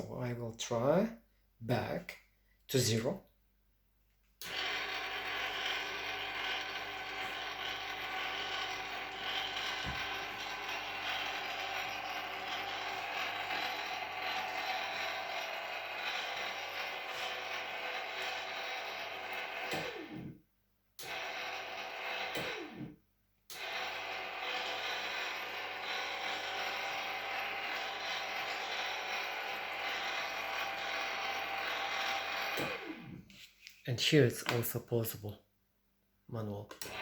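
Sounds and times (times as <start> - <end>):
geared motor running: 4.4 - 20.2, 21.0 - 22.7, 23.5 - 33.2.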